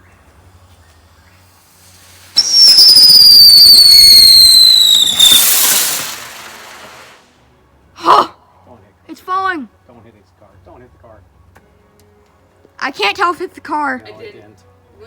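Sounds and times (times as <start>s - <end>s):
firework hiss: 1.2s - 7.3s
firework whistle gliding downward: 1.6s - 7.2s.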